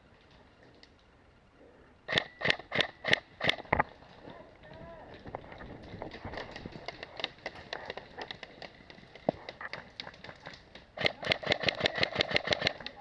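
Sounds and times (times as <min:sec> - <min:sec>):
airsoft gun rapid burst: 0:11.0 - 0:12.8.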